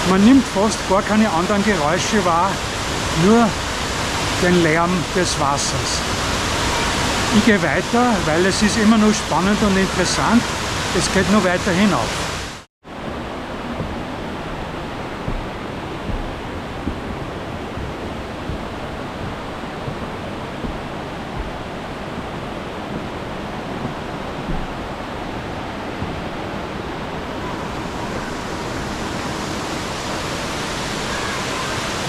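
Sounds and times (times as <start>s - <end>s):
rushing water roar: 0.0s - 32.0s
faint thumps: 13.0s - 26.7s.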